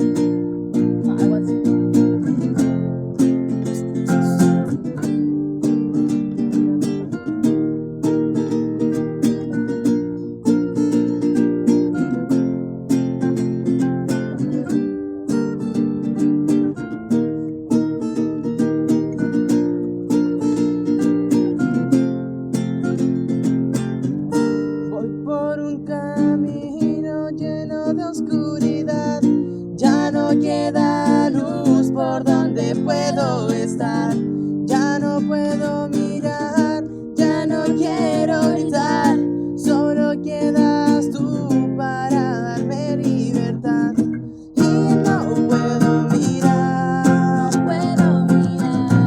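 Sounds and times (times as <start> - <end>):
person singing: 0.0 - 5.1, 24.9 - 49.0
strummed acoustic guitar: 0.0 - 49.0.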